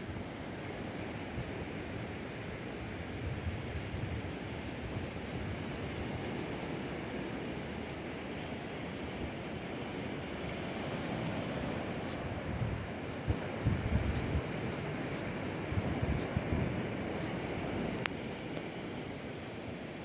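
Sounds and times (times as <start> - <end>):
wind buffeting microphone: 0.0 - 19.4
ocean surf on sandy beach: 0.0 - 20.0.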